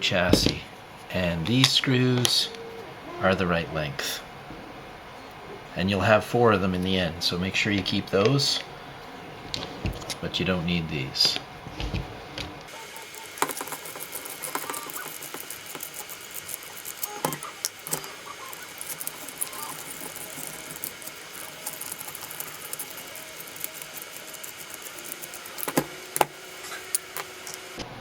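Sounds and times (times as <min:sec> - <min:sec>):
plastic parts and screws rattling: 0:11.2 - 0:27.8.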